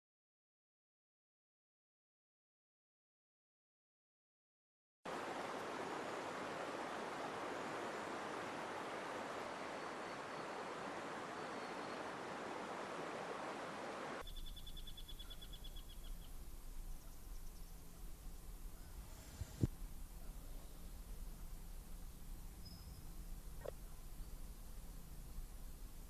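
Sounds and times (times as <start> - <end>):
rushing water: 5.1 - 14.2
bird trilling: 14.2 - 16.3.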